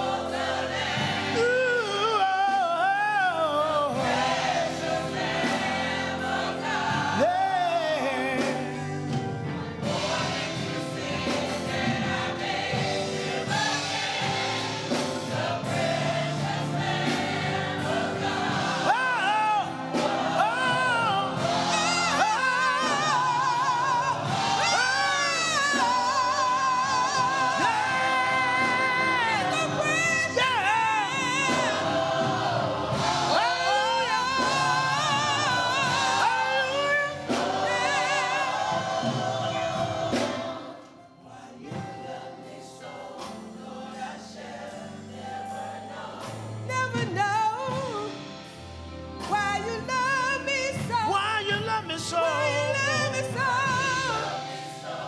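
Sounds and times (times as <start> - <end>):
gospel choir singing: 0.0 - 55.0
instrumental accompaniment: 0.0 - 55.0.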